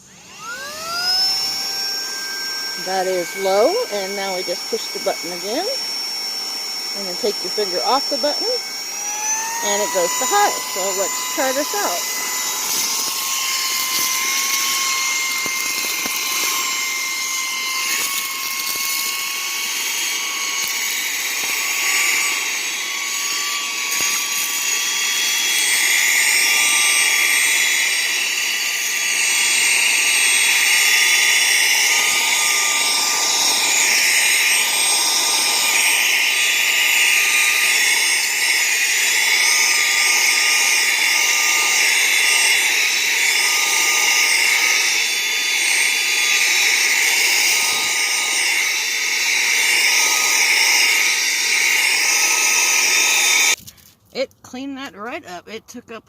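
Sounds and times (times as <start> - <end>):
handheld vacuum motor whine: 0.0 - 54.3
vacuum air rushing: 5.8 - 20.6.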